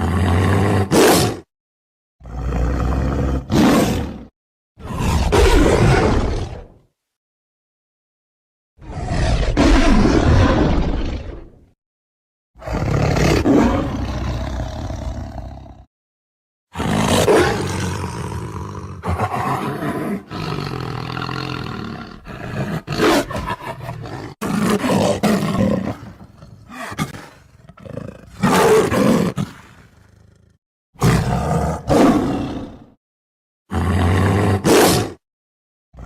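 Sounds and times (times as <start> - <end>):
lion roaring: 0.0 - 1.4, 2.2 - 6.8, 8.8 - 11.6, 12.6 - 15.9, 16.7 - 33.0, 33.7 - 35.2.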